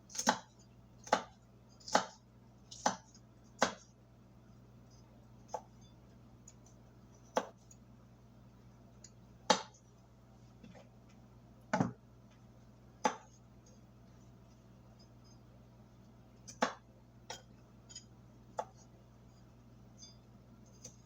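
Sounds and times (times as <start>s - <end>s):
knife chopping on cutting board: 0.1s - 3.9s, 7.3s - 7.6s, 9.5s - 9.8s, 13.0s - 13.4s, 16.5s - 17.5s, 18.6s - 18.9s.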